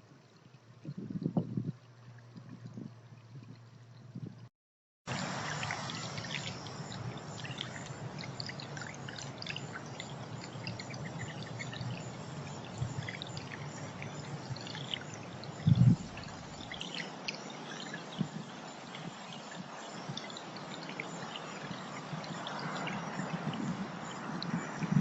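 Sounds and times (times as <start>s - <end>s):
running water pouring: 5.1s - 25.0s
small birds chirping: 5.4s - 25.0s.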